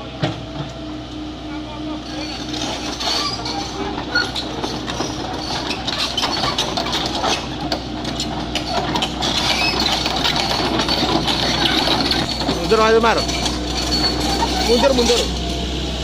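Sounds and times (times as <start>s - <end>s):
excavator diesel engine running: 0.0s - 16.0s
metallic clanking and clatter: 2.1s - 15.5s.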